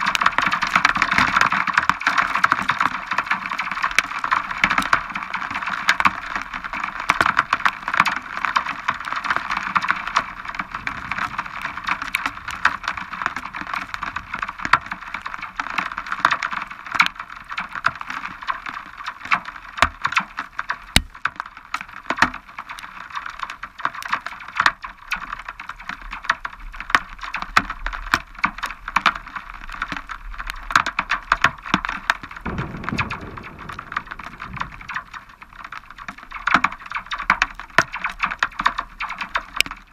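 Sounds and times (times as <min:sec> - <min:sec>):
heavy rain pattering: 0:00.0 - 0:39.9
low rumble: 0:10.4 - 0:14.1, 0:32.4 - 0:36.2.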